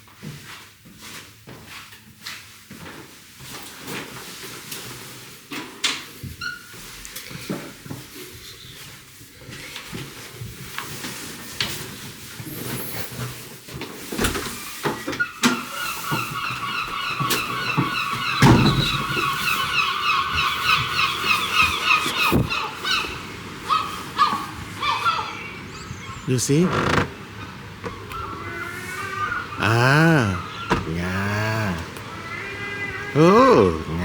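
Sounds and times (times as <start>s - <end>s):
gull calling: 15.3s - 34.0s.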